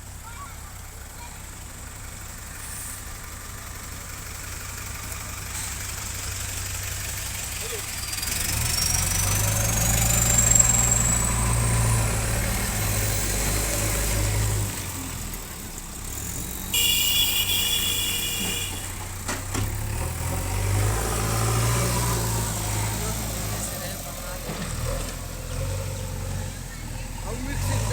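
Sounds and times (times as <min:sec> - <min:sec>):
diesel engine running under load: 0:00.0 - 0:27.9.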